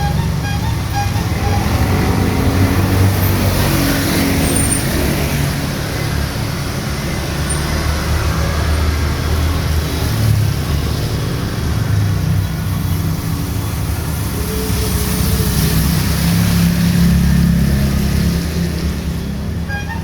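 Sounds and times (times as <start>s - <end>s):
vehicle passing on wet road: 0.2s - 12.2s, 12.9s - 19.5s.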